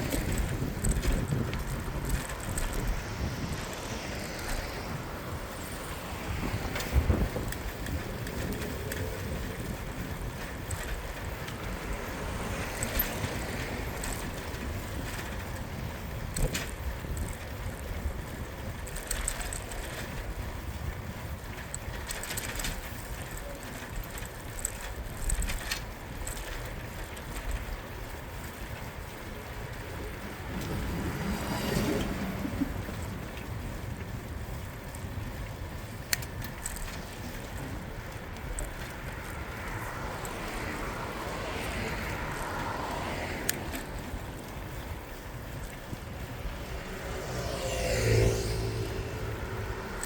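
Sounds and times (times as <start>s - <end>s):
bicycle tyre noise: 0.0s - 50.0s
faint city traffic: 0.0s - 50.0s
wind on microphone: 0.0s - 50.0s
short clicks and rattles: 12.6s - 20.4s, 21.4s - 27.8s.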